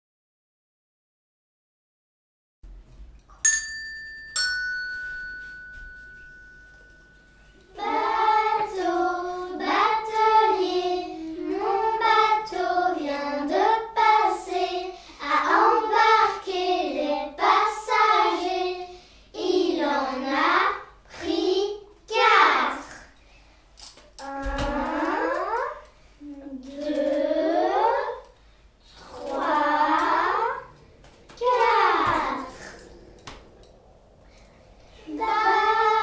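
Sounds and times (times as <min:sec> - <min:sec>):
struck chime notes: 0:03.4 - 0:07.7.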